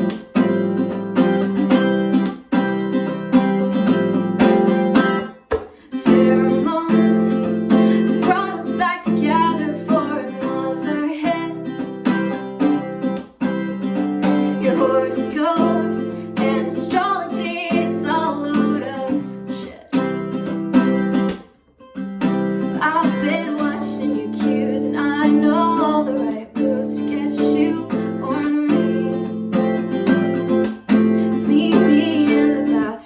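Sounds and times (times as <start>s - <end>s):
acoustic guitar strumming: 0.0s - 33.0s
person singing: 5.6s - 12.1s, 14.2s - 20.0s, 22.8s - 29.6s, 31.2s - 33.0s.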